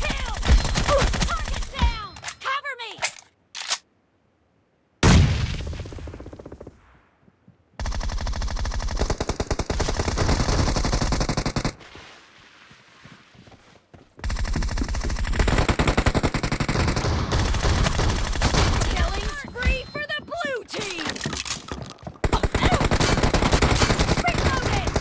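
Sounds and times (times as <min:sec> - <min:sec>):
video game gunshot: 0:05.0 - 0:06.2
video game automatic gunfire: 0:07.8 - 0:11.7, 0:14.2 - 0:19.4, 0:22.2 - 0:25.0.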